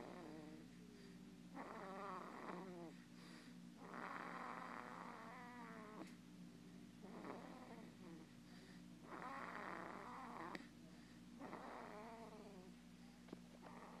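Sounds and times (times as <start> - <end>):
baby snoring: 0.0 - 0.7, 1.6 - 3.0, 3.8 - 6.2, 7.0 - 8.4, 9.0 - 10.7, 11.4 - 12.7, 13.6 - 14.0
steady low hum: 0.0 - 14.0.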